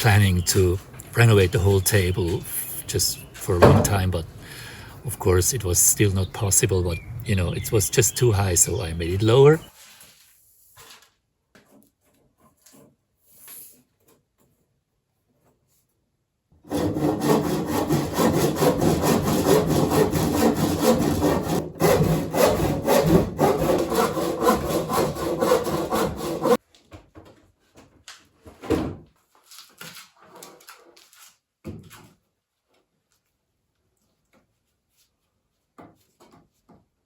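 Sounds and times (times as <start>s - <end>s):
saw rasping through wood: 0.0s - 9.7s, 16.7s - 26.6s.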